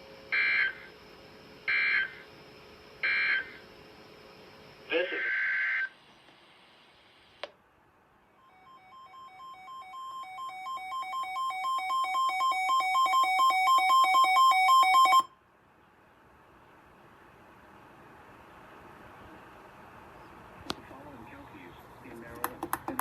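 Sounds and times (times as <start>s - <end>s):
alternating two-tone alarm: 0.0s - 2.3s, 2.9s - 3.7s, 8.3s - 15.4s.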